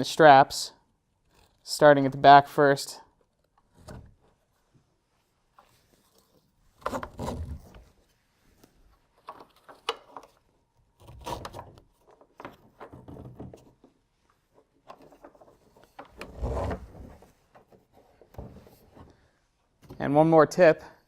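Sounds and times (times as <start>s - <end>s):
strap webbing rubbing and clicking: 1.1s - 1.8s, 5.4s - 19.1s.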